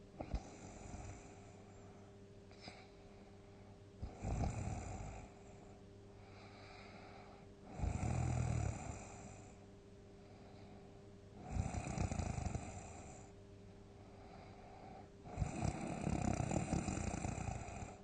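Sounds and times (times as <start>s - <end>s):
soft breath: 0.2s - 4.2s, 4.9s - 7.8s, 9.0s - 11.1s, 13.0s - 18.0s
person snoring loudly: 4.0s - 5.3s, 7.7s - 9.4s, 11.4s - 13.3s, 15.3s - 18.0s.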